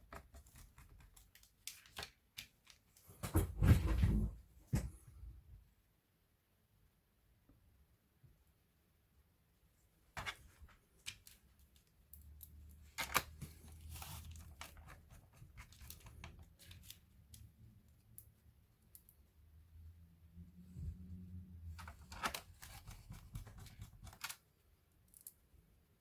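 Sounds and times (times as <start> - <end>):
plastic clicks and crinkling: 0.0 - 3.0, 10.2 - 17.5.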